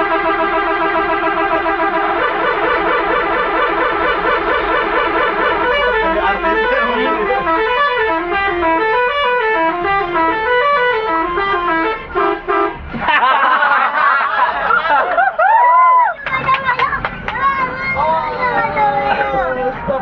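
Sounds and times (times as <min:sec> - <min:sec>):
multi-tone musical air horn: 0:00.0 - 0:12.8.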